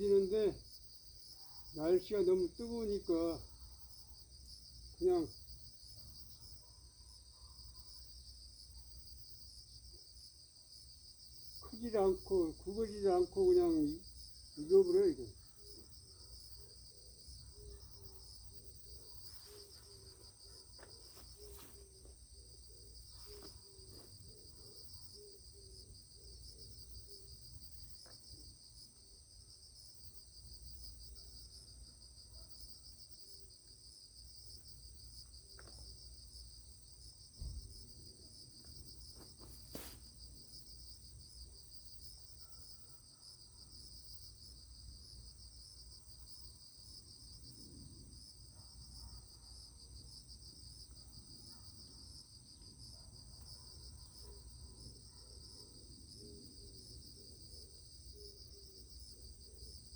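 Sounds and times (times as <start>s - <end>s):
insect chorus chirring: 0.0s - 59.9s
rustles: 18.9s - 25.0s, 38.6s - 40.6s.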